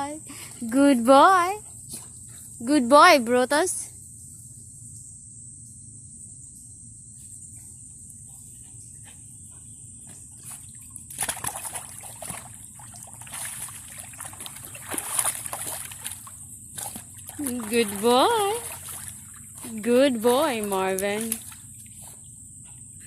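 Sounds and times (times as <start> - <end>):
water splashing and sloshing: 10.4 - 22.2.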